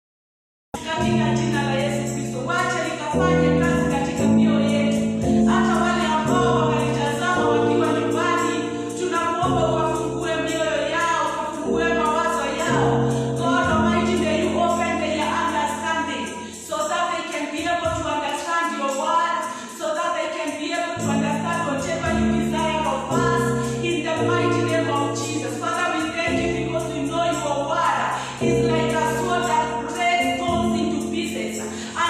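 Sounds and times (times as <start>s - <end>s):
held instrumental chords: 0.8s - 16.7s, 21.0s - 32.0s.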